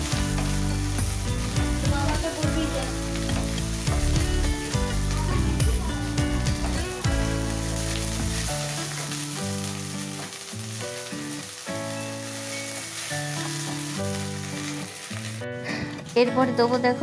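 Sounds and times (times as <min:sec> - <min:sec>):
stirring in a pan: 0:00.0 - 0:05.1
onion sizzling in hot oil: 0:00.0 - 0:17.0
slow background music: 0:00.0 - 0:17.0.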